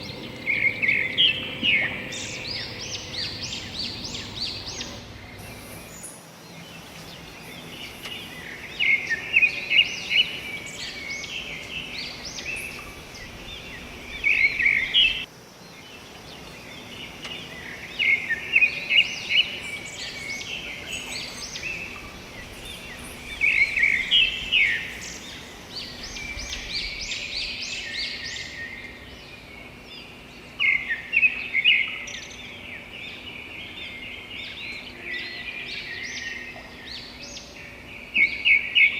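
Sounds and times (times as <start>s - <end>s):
birds chirping: 0.0s - 6.9s
forest background noise: 0.0s - 38.9s.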